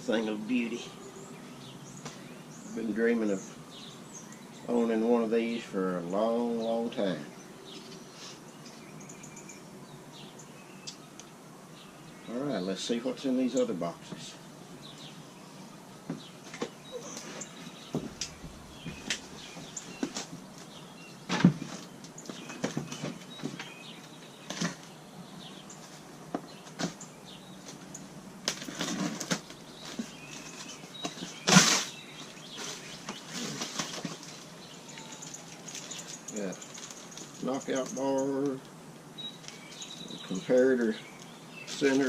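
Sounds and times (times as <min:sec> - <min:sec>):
cardboard and packing rustle: 0:28.4 - 0:37.9.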